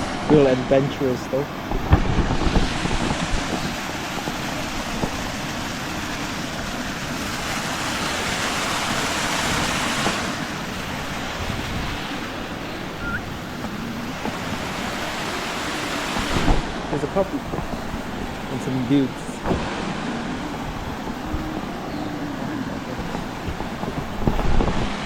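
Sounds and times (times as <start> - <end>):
waterfall rushing: 0.0 - 25.0.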